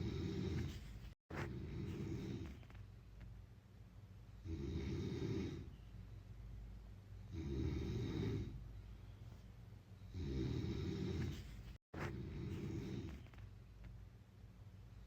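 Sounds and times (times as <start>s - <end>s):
person snoring: 0.0s - 2.7s, 4.4s - 5.8s, 7.3s - 8.6s, 10.1s - 13.4s
quiet breathing: 0.0s - 3.2s, 4.4s - 6.6s, 7.2s - 13.9s.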